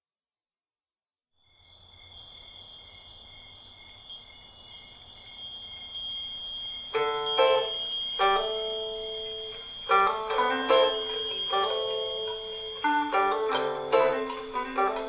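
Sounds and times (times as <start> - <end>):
chime-like high tones: 3.4 - 15.0
plucked notes: 7.0 - 15.0.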